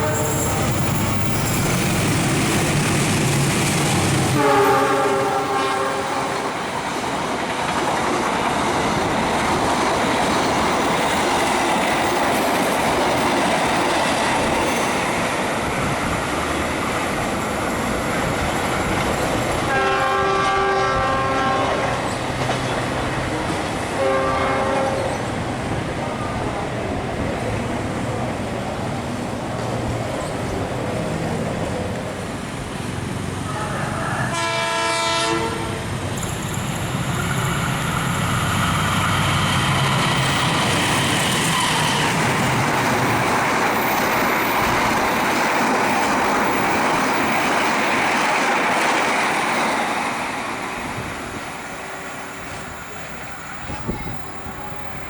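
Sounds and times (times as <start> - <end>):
train horn: 0.0 - 0.8, 4.4 - 6.7, 19.7 - 22.2, 24.0 - 25.3, 33.4 - 36.0
train wheels rushing on rails: 0.0 - 55.0.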